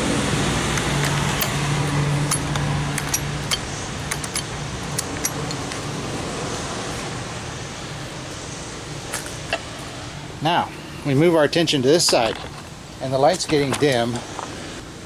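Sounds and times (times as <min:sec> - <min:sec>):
metallic clicks of small hardware: 0:00.7 - 0:05.9.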